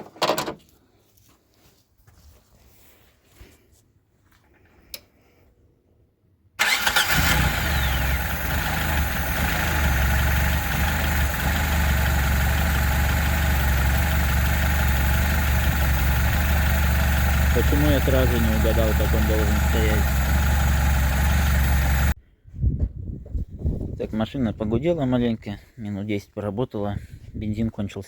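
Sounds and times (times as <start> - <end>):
click: 4.9 - 5.1
car engine running: 6.6 - 22.2.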